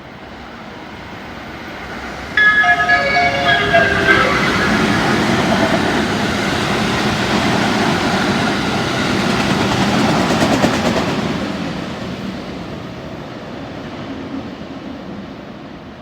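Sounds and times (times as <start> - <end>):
electric train rolling past: 2.4 - 10.7.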